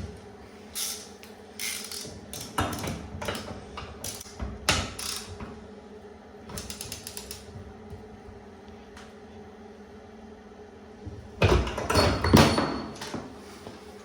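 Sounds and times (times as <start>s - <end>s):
ratchet spanner clicking: 0.8s - 2.5s, 5.0s - 5.3s, 6.6s - 7.4s.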